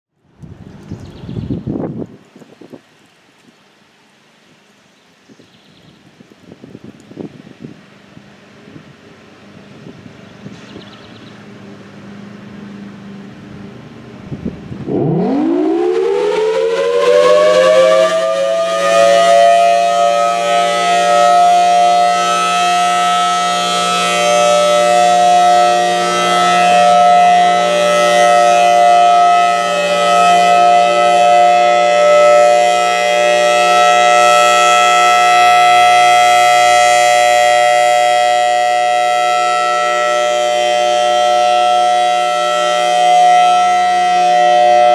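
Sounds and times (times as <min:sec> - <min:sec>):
low hum: 0:11.4 - 0:18.6
warning siren winding up: 0:14.8 - 0:44.9.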